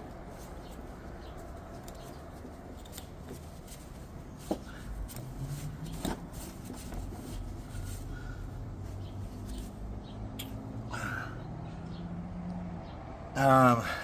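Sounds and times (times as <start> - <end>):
metal parts clicking and rustling: 0.0 - 8.1, 9.3 - 9.8.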